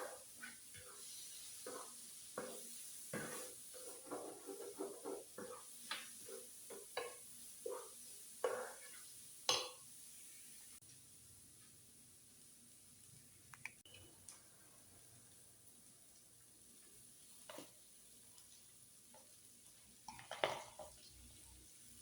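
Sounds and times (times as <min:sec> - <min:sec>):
metal utensil scraping griddle: 0:00.0 - 0:06.5
frying sizzle: 0:00.0 - 0:22.0.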